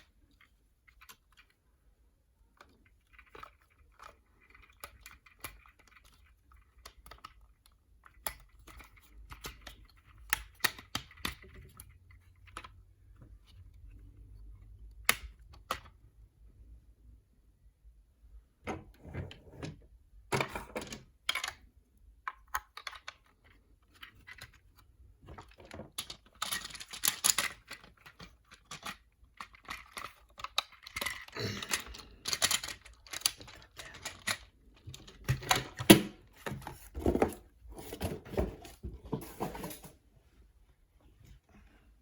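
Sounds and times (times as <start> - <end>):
plastic toy clicking and rattling: 2.5 - 16.0, 20.4 - 36.0.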